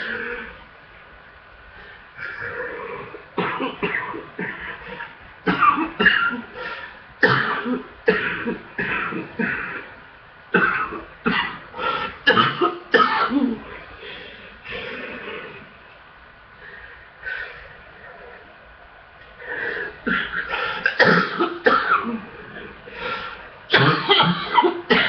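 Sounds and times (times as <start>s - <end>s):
person coughing wet coughs: 3.0s - 9.9s, 10.6s - 11.6s, 12.3s - 13.6s, 20.1s - 22.3s, 23.7s - 25.0s.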